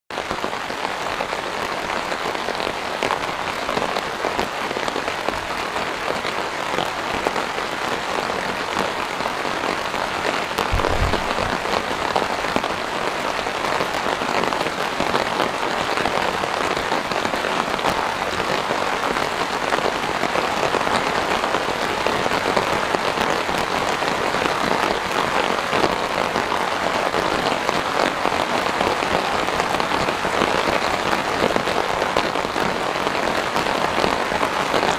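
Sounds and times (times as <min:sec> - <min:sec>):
steady rain: 0:00.1 - 0:34.9
low thump: 0:10.7 - 0:11.6.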